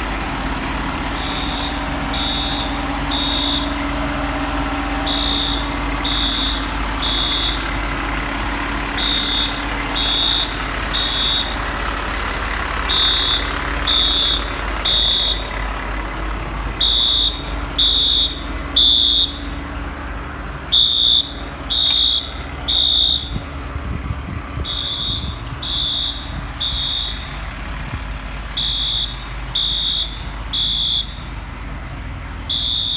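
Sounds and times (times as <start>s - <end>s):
fire truck engine idling: 0.0s - 32.9s
fire alarm beeping: 0.7s - 7.8s, 8.9s - 11.8s, 12.9s - 15.5s, 16.8s - 19.6s, 20.7s - 23.5s, 24.6s - 27.5s, 28.6s - 31.3s, 32.5s - 32.9s.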